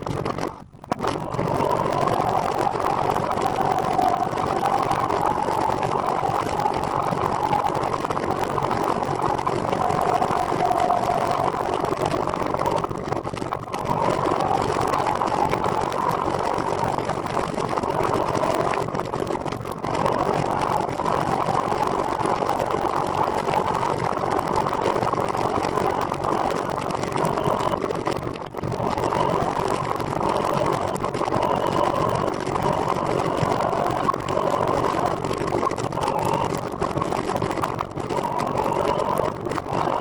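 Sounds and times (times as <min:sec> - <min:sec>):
wind rushing over microphone: 0:00.0 - 0:40.0.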